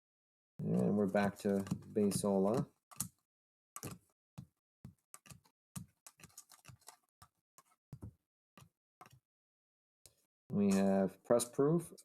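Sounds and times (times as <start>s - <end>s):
trading cards clicking and rustling: 0.7s - 3.2s, 3.8s - 4.1s, 4.9s - 7.1s, 10.6s - 11.0s.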